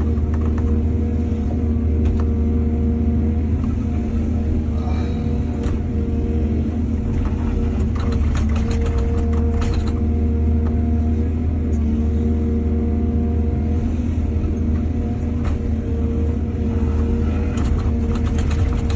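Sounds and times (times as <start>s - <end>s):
excavator diesel engine running: 0.0s - 18.9s
sharp clanks and rattles: 7.1s - 10.0s, 17.4s - 18.9s.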